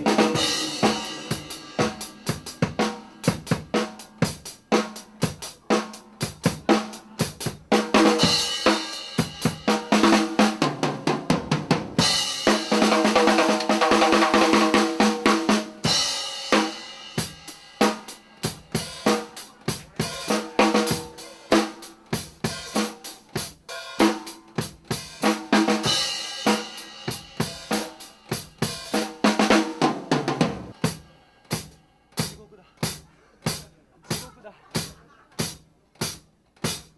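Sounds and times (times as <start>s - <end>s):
held chords: 0.0s - 5.2s
live band playing: 0.0s - 15.9s
drum kit beat: 0.0s - 36.9s.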